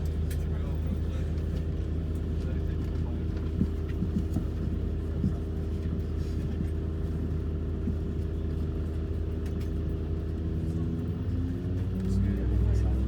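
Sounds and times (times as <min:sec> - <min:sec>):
airliner cabin drone: 0:00.0 - 0:10.4.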